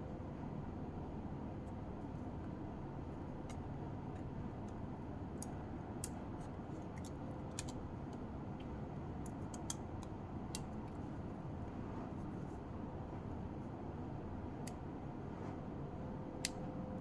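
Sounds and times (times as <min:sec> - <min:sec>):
steady low hum: 0:00.0 - 0:17.0
light clicks and taps: 0:05.4 - 0:11.0.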